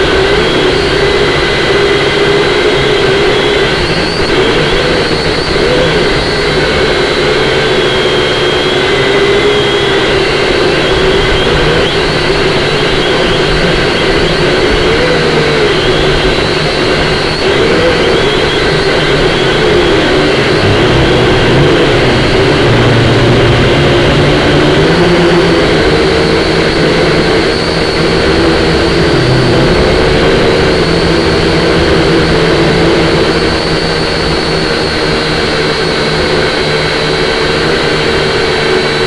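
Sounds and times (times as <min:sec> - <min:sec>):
quadcopter motors whining: 0:00.0 - 0:39.0
wind noise rushing: 0:10.2 - 0:36.0.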